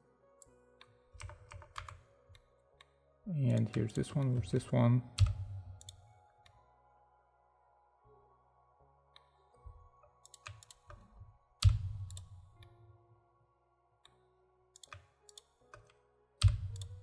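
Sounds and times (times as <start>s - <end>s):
keyboard and mouse clicks: 1.2s - 2.0s, 3.5s - 4.3s, 5.2s - 6.0s, 10.2s - 11.0s, 11.6s - 12.7s, 14.8s - 17.0s.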